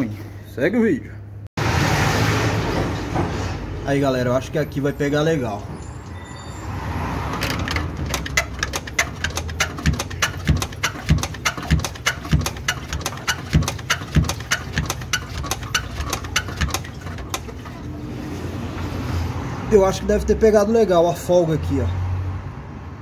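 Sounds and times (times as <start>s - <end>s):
axle bushing clicking and knocking: 7.2s - 18.0s.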